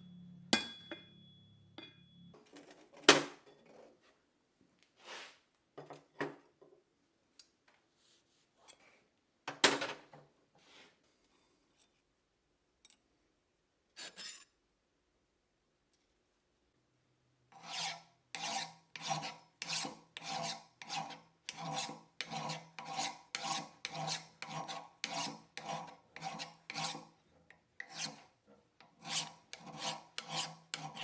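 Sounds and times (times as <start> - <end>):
short scraping sounds: 5.0 - 5.4.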